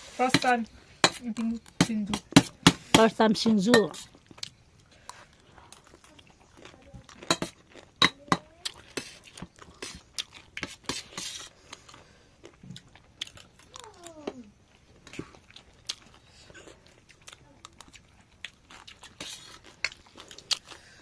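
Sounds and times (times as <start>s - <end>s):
crunchy chewing: 3.9s - 21.0s
cutlery clinking against a plate: 7.2s - 9.1s.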